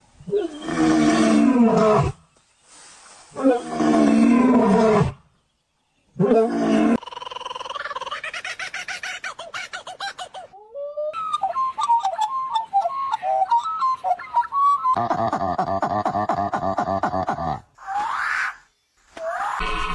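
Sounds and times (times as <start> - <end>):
warbling whistled notes with clicks: 11.2 - 15.0.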